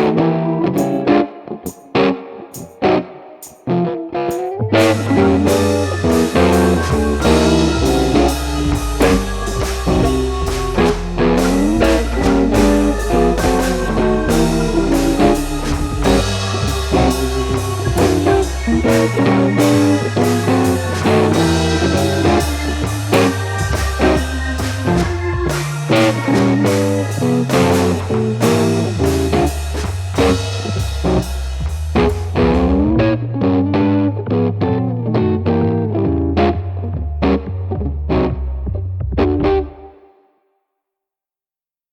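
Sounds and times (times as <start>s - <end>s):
blues-rock music: 0.0s - 40.0s.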